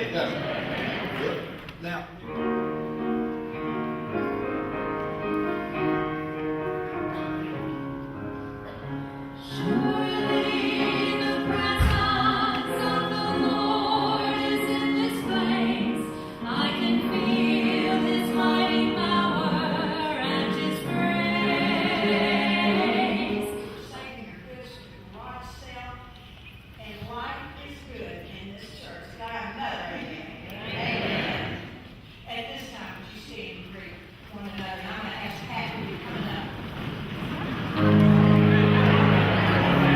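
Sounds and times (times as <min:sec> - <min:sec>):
instruments playing worship music: 0:02.3 - 0:23.8, 0:37.5 - 0:39.9
choir singing: 0:09.4 - 0:23.9, 0:30.5 - 0:31.9, 0:37.7 - 0:39.9
low thump: 0:11.7 - 0:12.2.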